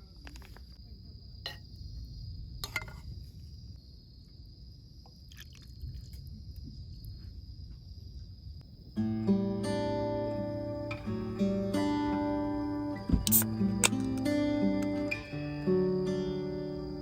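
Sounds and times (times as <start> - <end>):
insects chirping: 0.0 - 17.0
sharp clicks: 13.2 - 15.0.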